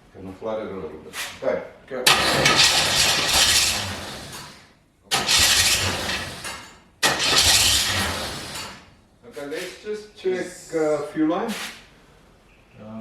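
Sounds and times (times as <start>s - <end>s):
car engine cranking on starter: 2.1s - 9.0s.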